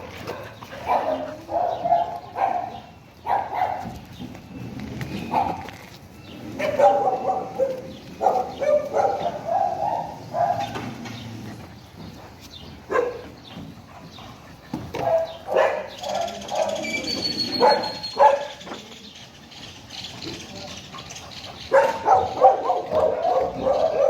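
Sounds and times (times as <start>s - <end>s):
dogs barking: 0.0s - 4.1s, 5.3s - 5.8s, 6.4s - 11.9s, 12.7s - 18.7s, 20.8s - 24.0s.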